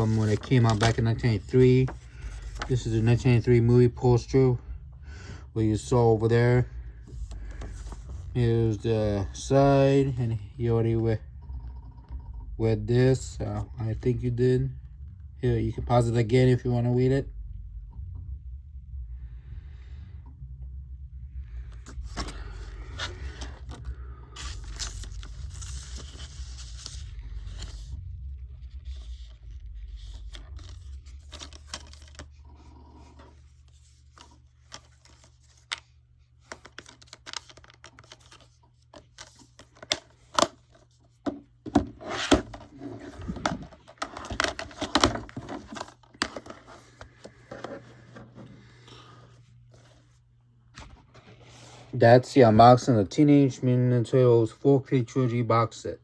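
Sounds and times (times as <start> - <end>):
cardboard packaging rustling: 0.0 - 3.2, 21.9 - 50.2
low hum: 0.0 - 36.5.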